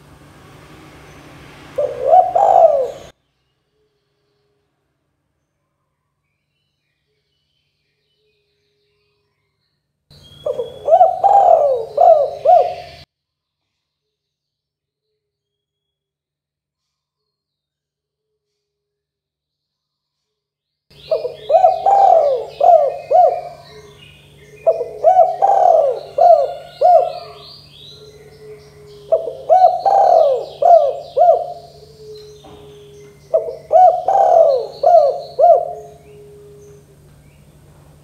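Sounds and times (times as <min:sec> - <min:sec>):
dove cooing: 0:01.8 - 0:03.1, 0:10.4 - 0:13.0, 0:21.0 - 0:37.1
faint high chirping: 0:05.5 - 0:13.1, 0:20.9 - 0:37.5.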